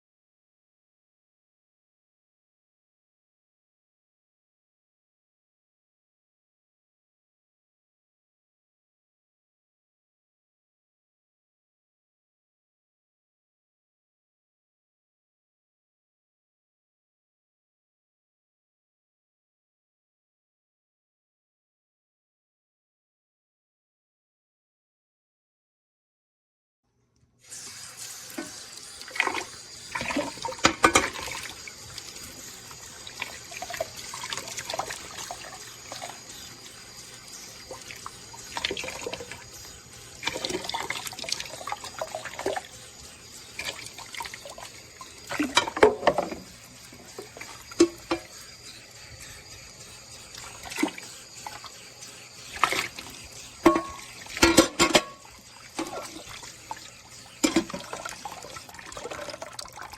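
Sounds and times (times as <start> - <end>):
running water: 27.4 - 59.9.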